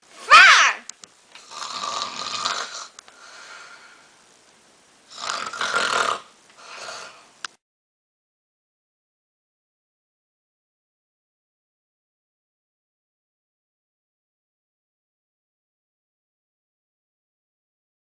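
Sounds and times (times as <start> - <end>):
person snoring: 1.4 - 4.0, 5.1 - 7.4
breath out: 3.1 - 4.1.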